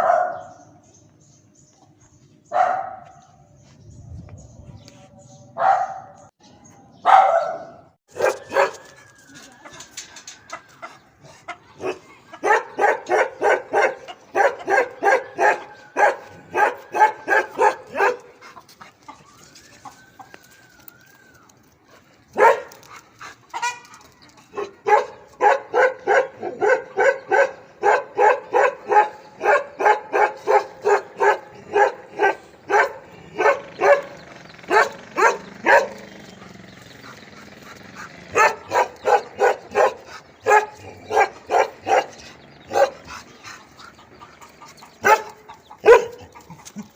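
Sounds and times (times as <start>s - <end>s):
dog barking: 0.0s - 0.6s, 2.5s - 3.4s, 5.6s - 6.3s, 7.0s - 9.0s, 11.8s - 18.4s, 22.4s - 22.8s, 24.5s - 36.5s, 38.0s - 43.1s, 45.0s - 46.4s.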